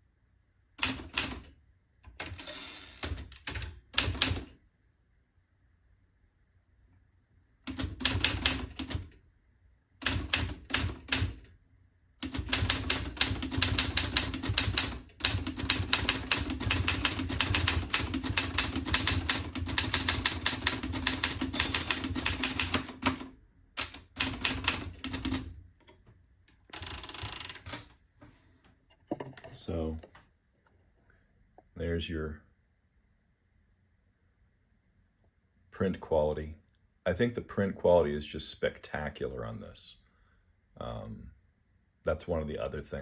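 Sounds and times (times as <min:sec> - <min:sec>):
typewriter keys striking: 0:10.0 - 0:11.4, 0:12.2 - 0:25.5.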